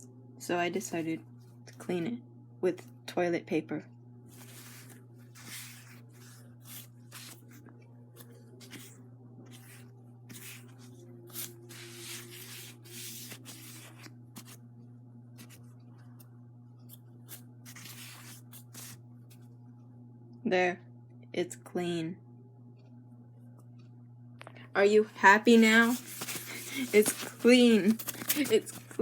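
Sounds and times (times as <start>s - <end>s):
steady low hum: 0.0s - 29.0s
paper wiping a screen: 4.3s - 14.6s, 17.3s - 19.0s, 25.4s - 29.0s.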